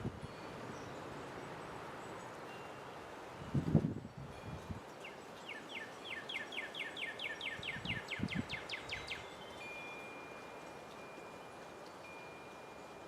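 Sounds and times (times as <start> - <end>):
cardinal singing whistled notes: 5.0 - 10.4.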